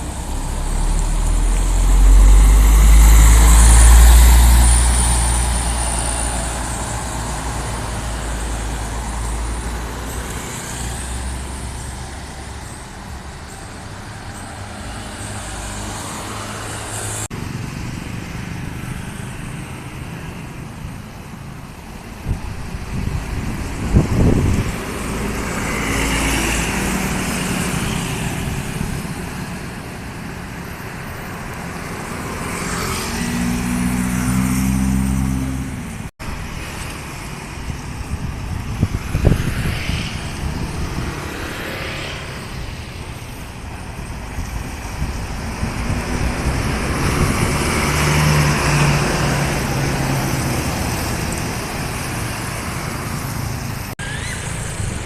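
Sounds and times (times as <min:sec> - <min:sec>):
deep engine hum: 0:00.0 - 0:05.1
road traffic passing: 0:00.0 - 0:55.0.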